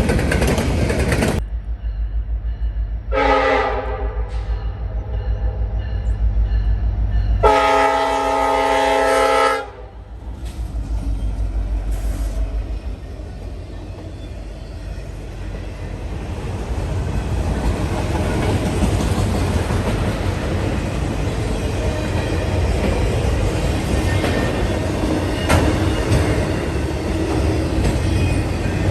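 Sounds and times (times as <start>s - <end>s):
train cars rumbling and clattering: 0.0s - 28.9s
locomotive air horn: 3.1s - 4.8s, 7.4s - 10.0s.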